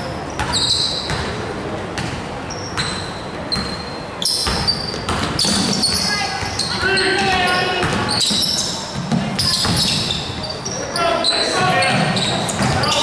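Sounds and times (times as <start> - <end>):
sneakers squeaking: 0.0 - 13.0
basketball bouncing: 0.4 - 1.4, 4.4 - 10.5, 11.9 - 12.9.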